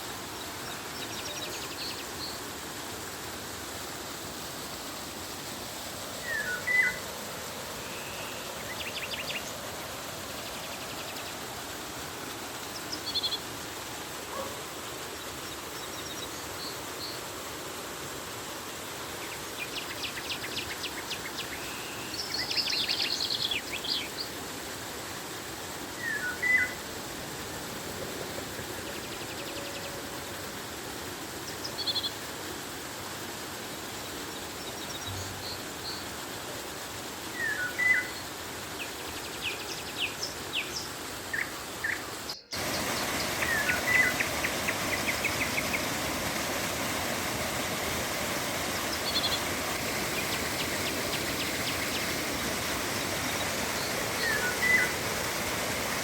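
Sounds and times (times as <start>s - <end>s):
river water flowing: 0.0s - 56.0s
birds calling: 41.3s - 56.0s.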